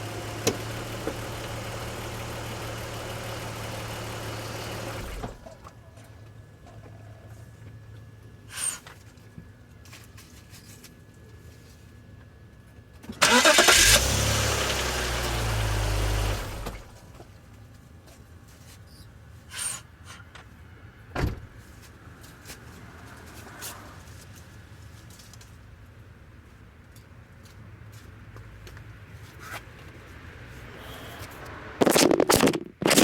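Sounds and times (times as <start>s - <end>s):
car engine starting: 0.0s - 5.6s, 13.2s - 17.2s.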